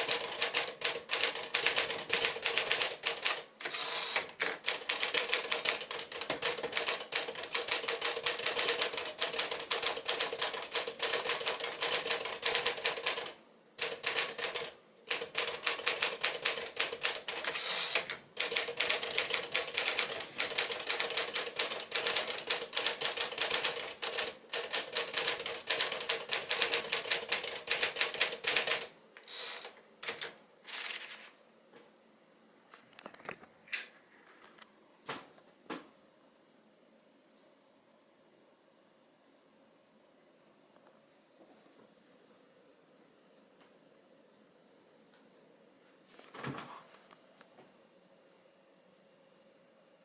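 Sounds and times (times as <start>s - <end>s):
manual typewriter typing: 0.0s - 31.3s
soft mechanical sounds: 0.0s - 32.0s.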